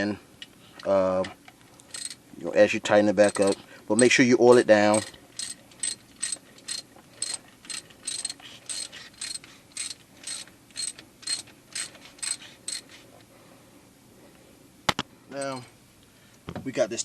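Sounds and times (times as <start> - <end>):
ratchet wrench clicking: 0.8 - 2.2, 3.2 - 12.8.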